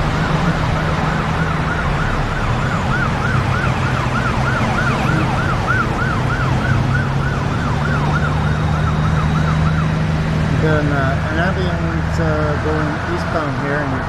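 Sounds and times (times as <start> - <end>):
ambulance siren fast yelp: 0.0 - 10.0
low vehicle hum: 0.0 - 14.0.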